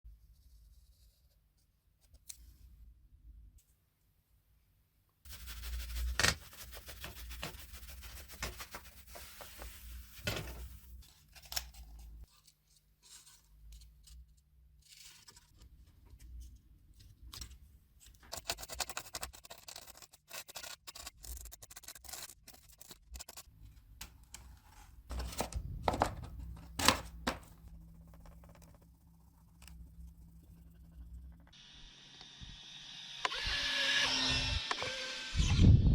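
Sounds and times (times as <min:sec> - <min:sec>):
scraping and cutting: 0:18.1 - 0:23.5, 0:28.4 - 0:35.8.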